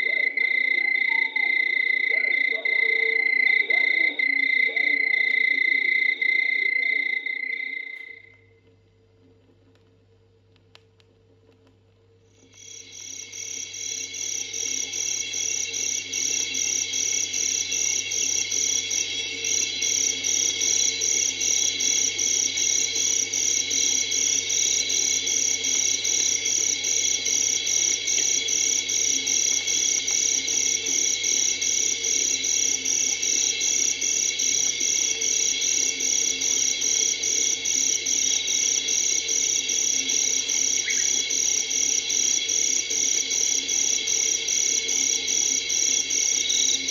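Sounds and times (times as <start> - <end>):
night insects chirring: 0.0 - 8.6, 12.3 - 46.9.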